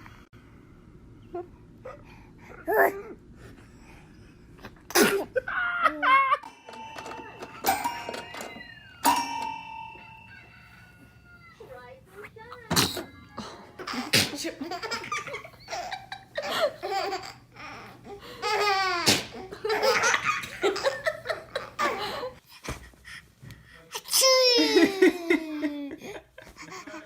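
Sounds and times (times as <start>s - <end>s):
baby laughing: 12.8s - 22.4s.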